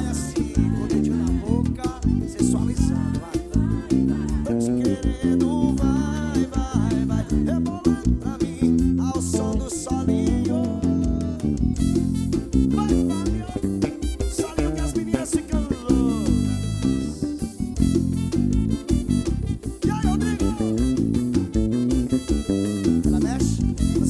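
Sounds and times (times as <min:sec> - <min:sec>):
bass line: 0:00.0 - 0:24.0
drums: 0:00.0 - 0:24.0
guitar lead melody: 0:00.0 - 0:24.0.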